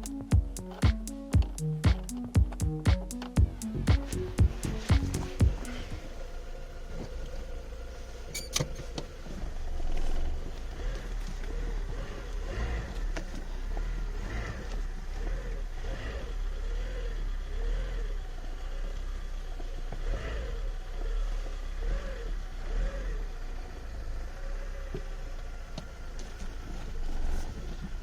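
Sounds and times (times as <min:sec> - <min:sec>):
heavy low rumble: 0:00.0 - 0:07.0
car engine running: 0:00.0 - 0:20.1.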